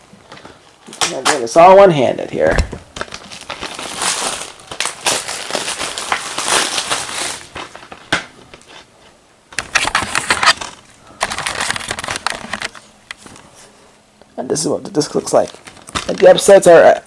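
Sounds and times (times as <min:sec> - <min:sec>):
packaging crinkling: 0:02.4 - 0:08.8, 0:09.6 - 0:13.4, 0:15.3 - 0:16.5.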